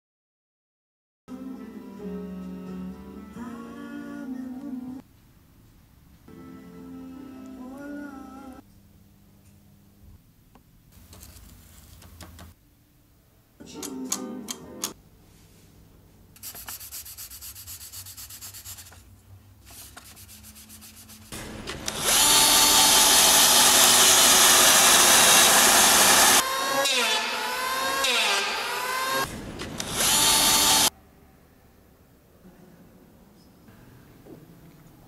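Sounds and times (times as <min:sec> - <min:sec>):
small motor running: 0:21.8 - 0:26.9, 0:27.5 - 0:30.9.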